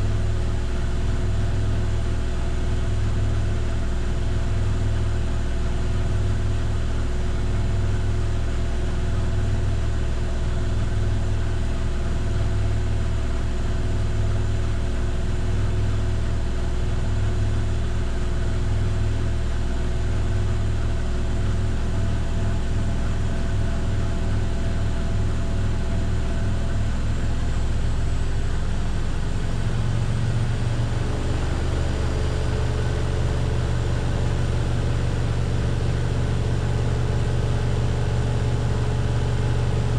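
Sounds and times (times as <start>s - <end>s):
washing machine spinning: 26.5s - 39.9s.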